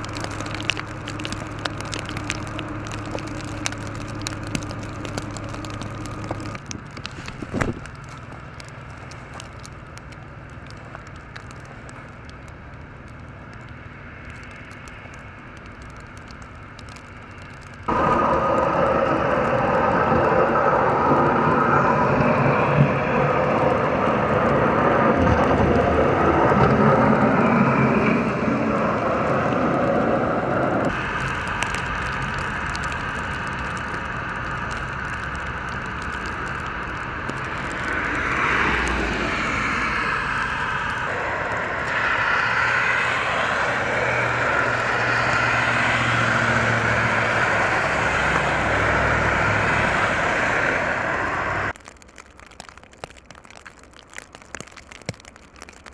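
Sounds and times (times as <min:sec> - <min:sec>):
vehicle engine and road noise: 0:00.0 - 0:55.9
passing vehicle pitch sweep: 0:17.9 - 0:33.1, 0:36.8 - 0:51.7.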